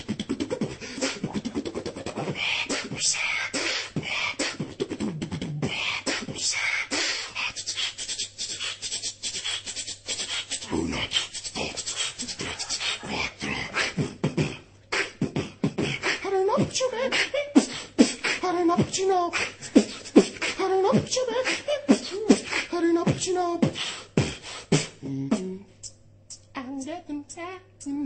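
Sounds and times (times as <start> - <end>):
person beatboxing: 0.0 - 28.0
person singing bending tones: 9.9 - 28.0.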